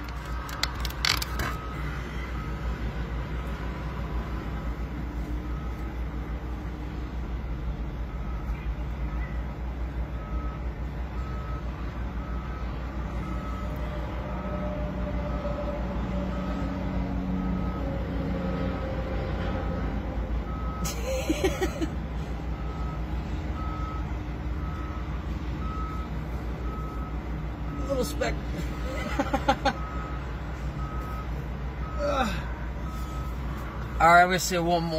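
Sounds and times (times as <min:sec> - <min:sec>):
low engine rumble: 0:00.0 - 0:18.2, 0:18.8 - 0:34.8
reversing alarm beeping: 0:01.1 - 0:02.8, 0:10.1 - 0:18.6, 0:20.4 - 0:21.7, 0:22.5 - 0:34.9.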